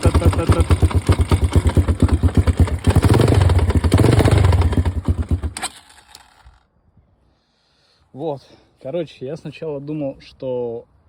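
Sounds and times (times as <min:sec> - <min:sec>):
motorbike engine knocking: 0:00.0 - 0:05.6.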